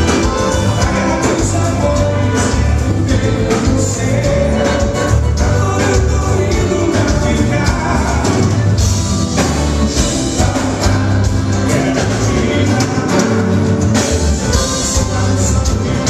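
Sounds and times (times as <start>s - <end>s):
person singing: 0.0s - 8.6s, 10.0s - 13.8s
amplified band music: 0.0s - 16.0s.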